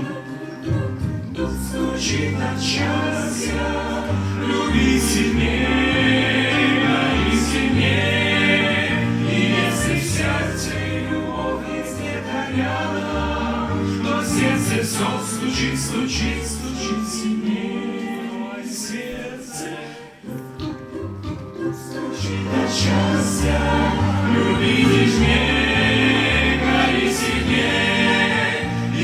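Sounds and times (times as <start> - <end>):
choir singing gospel song: 0.0 - 29.0
bass line: 22.4 - 29.0.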